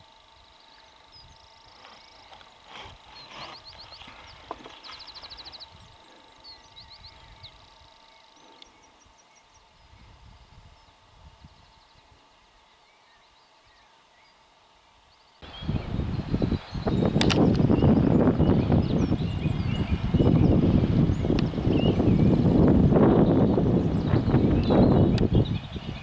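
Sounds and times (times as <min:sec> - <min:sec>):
birds chirping: 0:00.4 - 0:10.1, 0:15.2 - 0:26.0
soft low rumbling: 0:15.4 - 0:26.0.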